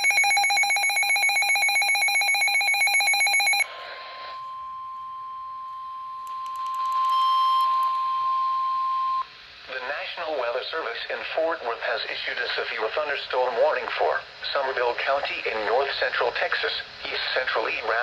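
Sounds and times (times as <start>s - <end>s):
steady alarm tone: 0.0s - 6.2s.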